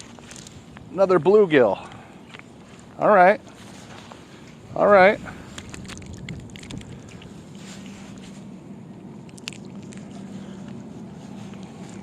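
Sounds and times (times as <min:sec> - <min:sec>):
steady low hum: 0:00.0 - 0:12.0
wet squishy fish handling: 0:05.3 - 0:12.0.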